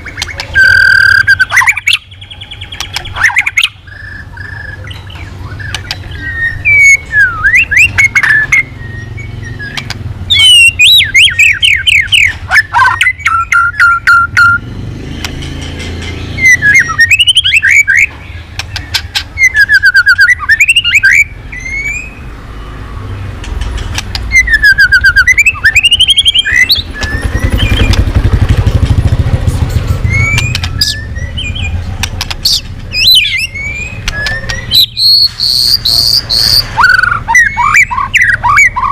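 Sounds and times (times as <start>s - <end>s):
songbird singing whistles: 0.0s - 14.7s, 16.1s - 22.8s, 24.1s - 28.1s, 30.0s - 38.9s
bird clicking rattles: 32.0s - 32.5s.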